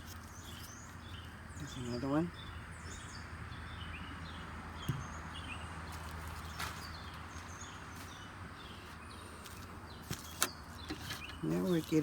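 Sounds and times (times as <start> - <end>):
small birds chirping: 0.0 - 12.0.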